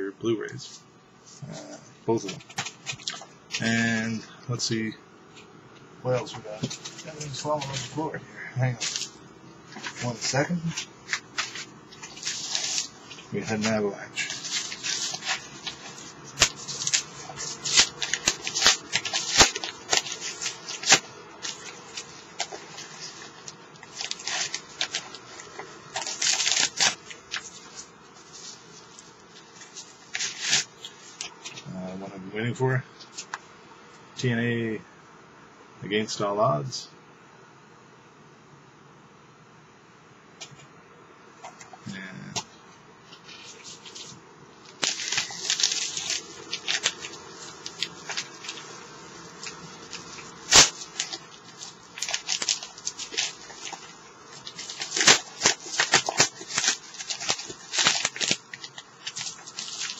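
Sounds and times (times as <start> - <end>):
packaging rustling: 2.2 - 3.7, 6.1 - 31.7, 43.1 - 59.9.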